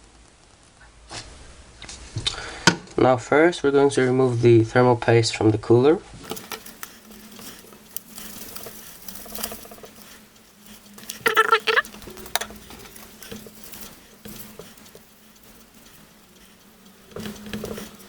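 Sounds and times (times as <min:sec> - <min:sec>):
paper rubbing on metal: 0:06.3 - 0:18.0
short squeak: 0:11.1 - 0:12.0.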